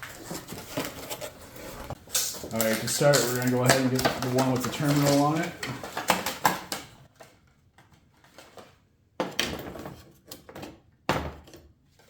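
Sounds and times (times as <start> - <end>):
cable handling clicks and knocks: 2.5 - 6.9.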